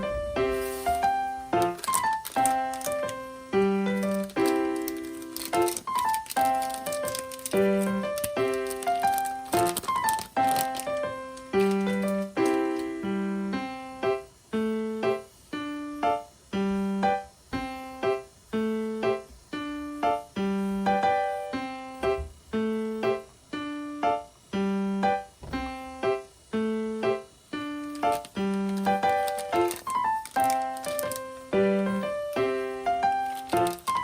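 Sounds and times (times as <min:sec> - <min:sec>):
keyboard background music: 0:00.0 - 0:14.2, 0:27.8 - 0:34.0.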